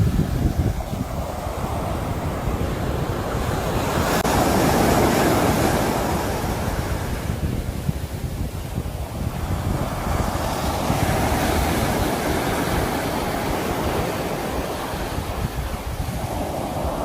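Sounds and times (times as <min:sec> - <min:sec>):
sea waves breaking on shore: 0:00.0 - 0:17.0
wind rumble on microphone: 0:00.0 - 0:17.0.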